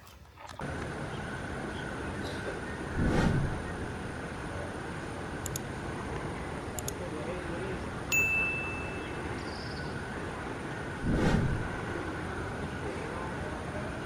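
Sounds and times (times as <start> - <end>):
steady background hum: 0.6 - 14.0
short low rumble: 2.9 - 4.2, 11.0 - 12.1
bright bell ding: 8.1 - 9.2.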